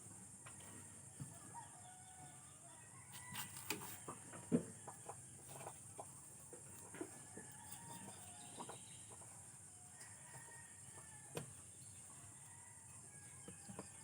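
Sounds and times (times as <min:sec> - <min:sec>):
chicken clucks: 0:03.2 - 0:09.5.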